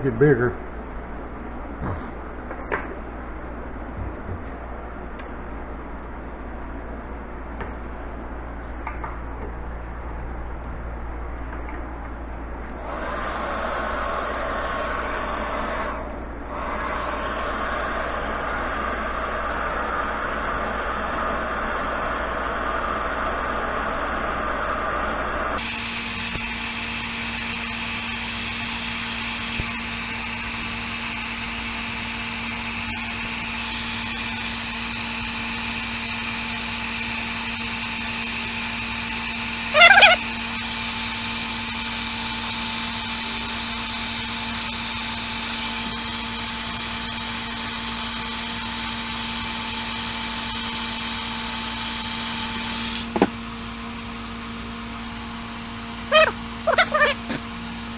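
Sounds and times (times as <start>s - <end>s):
heat gun running: 25.6s - 53.6s
loud squeal: 39.7s - 40.2s, 56.1s - 57.4s.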